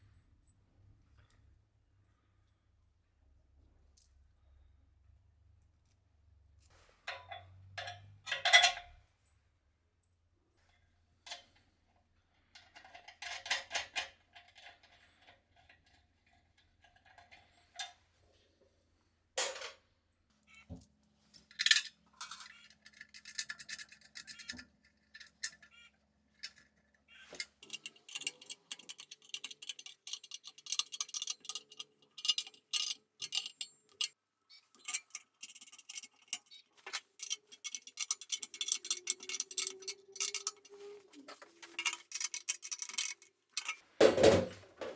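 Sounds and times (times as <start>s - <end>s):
small hard objects clicking and clinking: 21.5s - 25.7s, 26.4s - 43.8s.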